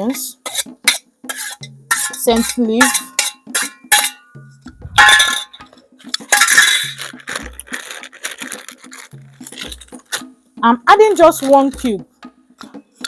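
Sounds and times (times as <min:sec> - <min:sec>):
utensils clinking against cooking pot: 0:00.0 - 0:10.4.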